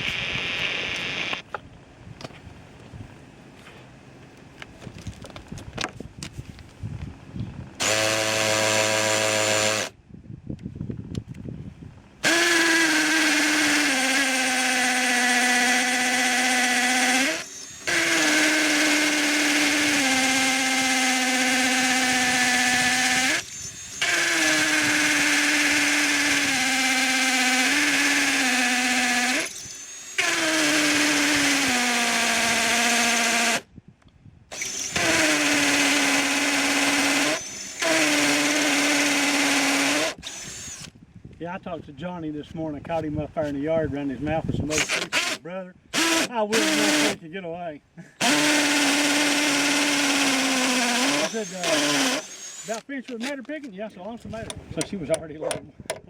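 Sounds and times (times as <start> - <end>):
electric drill whining: 0.0 - 1.4, 7.8 - 10.0, 12.2 - 33.6, 34.5 - 41.0, 44.7 - 47.2, 48.2 - 52.9.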